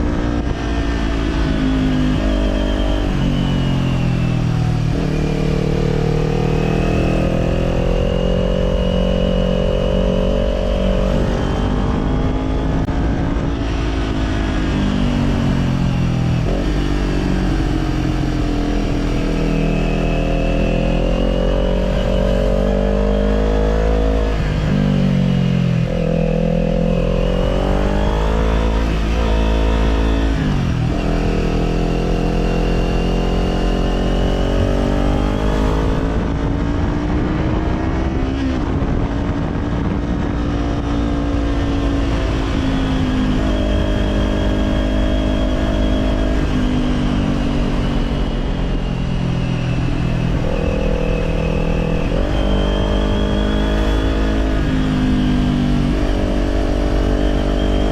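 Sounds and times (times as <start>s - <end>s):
motorcycle engine revving: 0.0s - 57.9s.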